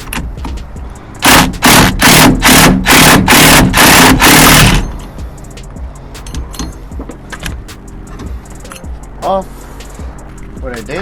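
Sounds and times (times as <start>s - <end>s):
impact wrench hammering: 1.2s - 5.0s.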